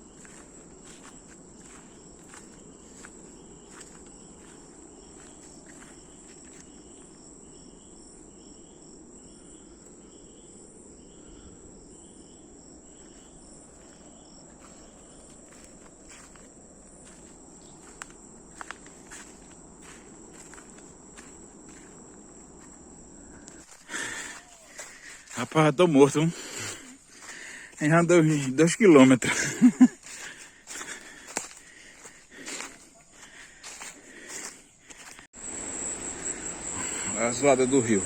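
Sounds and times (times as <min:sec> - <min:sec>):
footsteps on leaf litter: 0:00.0 - 0:06.8, 0:13.7 - 0:22.8, 0:23.5 - 0:35.4
insects droning: 0:00.0 - 0:38.0.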